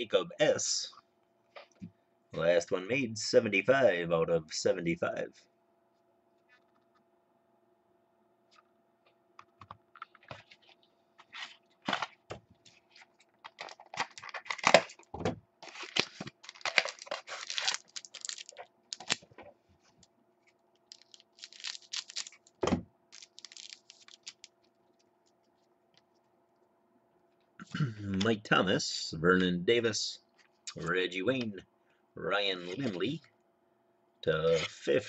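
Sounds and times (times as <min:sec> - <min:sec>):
faint steady hum: 0:00.0 - 0:35.0
card pack crinkling and tearing: 0:11.3 - 0:19.3, 0:20.8 - 0:24.6.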